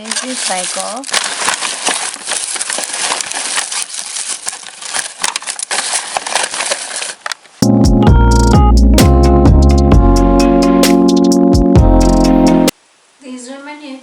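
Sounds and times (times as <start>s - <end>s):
packaging crumpled by hand: 0.0s - 7.6s.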